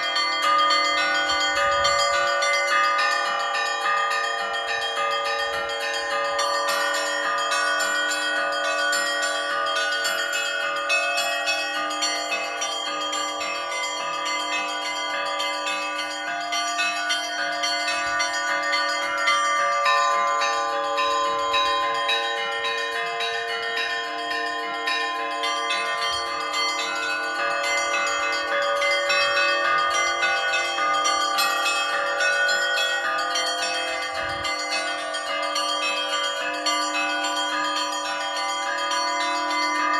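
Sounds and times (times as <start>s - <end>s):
larger bells ringing: 0.0s - 39.9s
small bells struck quickly: 25.0s - 39.9s.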